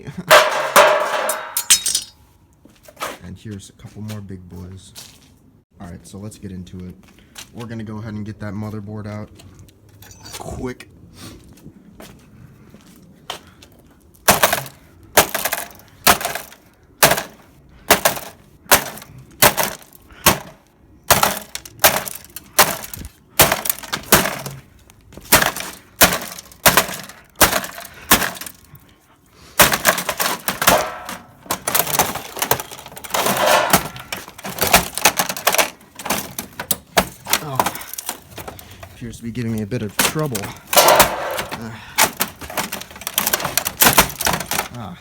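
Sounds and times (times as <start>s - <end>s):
crashing and breaking: 0.3s - 2.2s, 21.1s - 24.6s, 25.3s - 28.7s, 29.6s - 38.5s, 40.0s - 44.7s.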